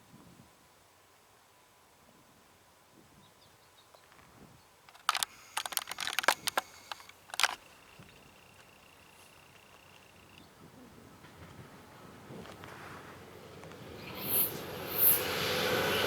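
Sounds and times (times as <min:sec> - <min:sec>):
sharp metallic clicks and taps: 0:04.9 - 0:08.7.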